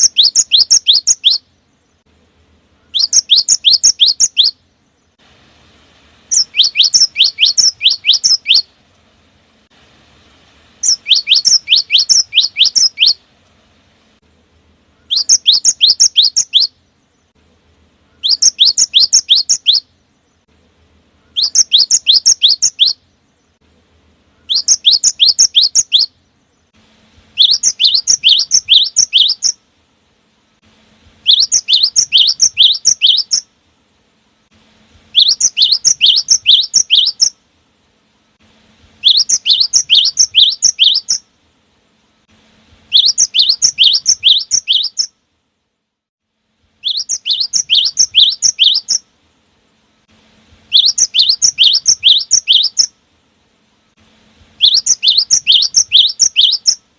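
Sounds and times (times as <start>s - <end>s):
bird singing ringing phrases: 0.0s - 2.0s, 2.7s - 5.2s, 6.3s - 8.8s, 10.8s - 13.2s, 14.9s - 17.4s, 18.0s - 20.4s, 21.2s - 23.6s, 24.3s - 26.7s, 27.4s - 29.6s, 31.2s - 33.5s, 35.1s - 37.4s, 39.0s - 41.2s, 42.9s - 45.1s, 46.8s - 49.0s, 50.7s - 52.9s, 54.6s - 56.8s.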